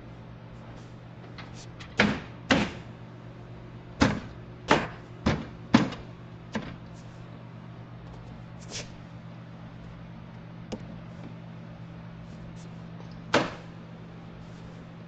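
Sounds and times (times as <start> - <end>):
sharp knocks on truck door: 1.9 - 2.9, 4.0 - 6.8, 13.3 - 13.7.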